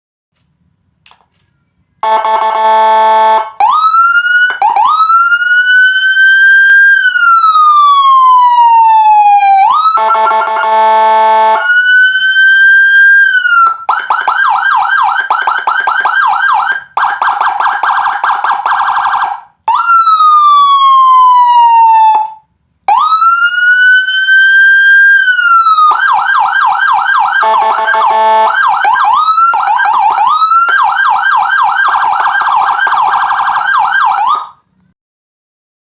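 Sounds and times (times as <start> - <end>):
electronic siren wailing and yelping: 2.0 - 34.6.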